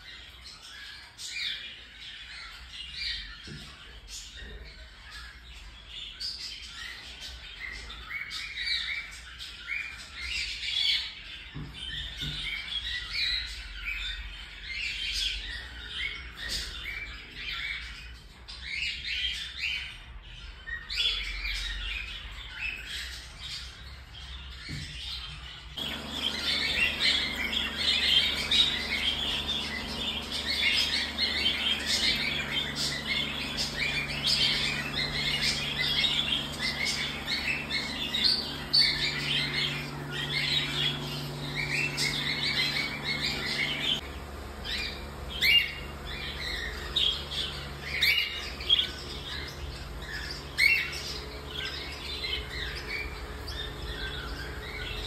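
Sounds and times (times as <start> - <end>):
low steady hum: 25.8 - 55.0
cockatiels chirping and squawking: 44.7 - 55.0.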